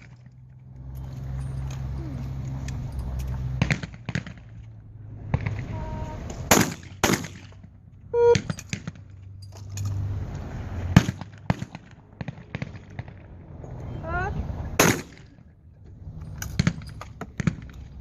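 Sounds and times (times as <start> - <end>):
shotgun shots: 6.5 - 7.6, 11.0 - 13.2, 14.8 - 15.4
short pitched beep: 8.2 - 8.5.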